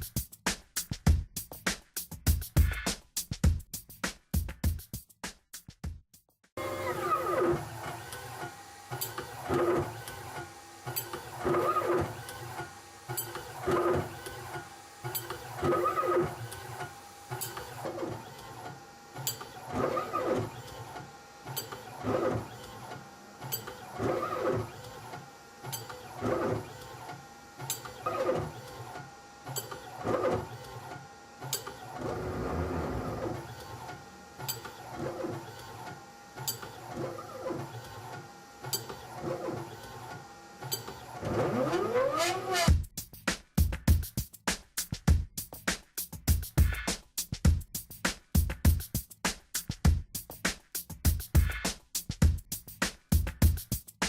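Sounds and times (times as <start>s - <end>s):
stepper motors whining buzz: 6.6s - 42.7s.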